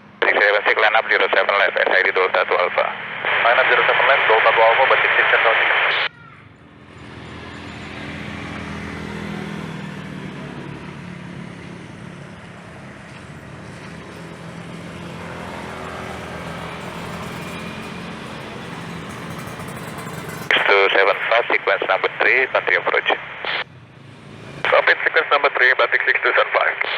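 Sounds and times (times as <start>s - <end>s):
jet engines rumbling: 15.0s - 23.6s.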